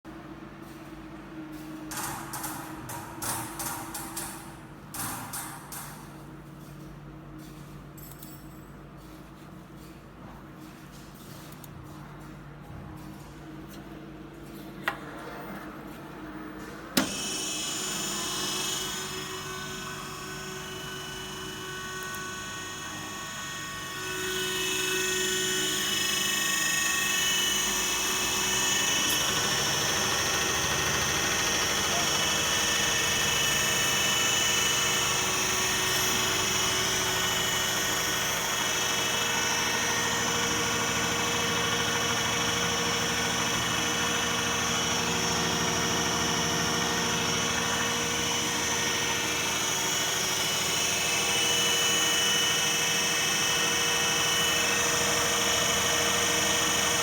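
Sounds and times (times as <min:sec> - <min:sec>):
test bench machine drone and whine: 0:12.1 - 0:57.0.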